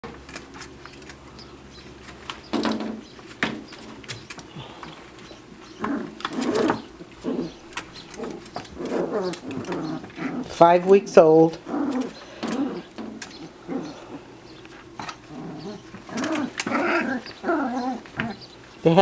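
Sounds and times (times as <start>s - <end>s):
puppies whimpering and squeaking: 0.7s - 19.0s.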